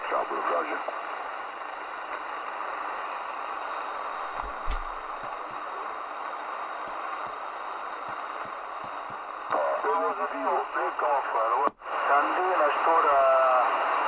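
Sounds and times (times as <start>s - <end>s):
radio static hiss: 0.0s - 14.0s
crackling clicks: 8.0s - 9.6s.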